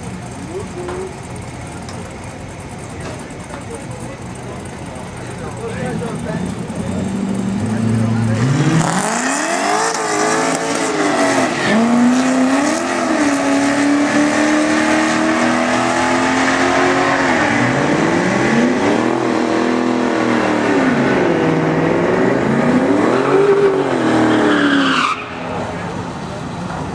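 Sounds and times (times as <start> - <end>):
car engine revving through gears: 6.5 - 25.3.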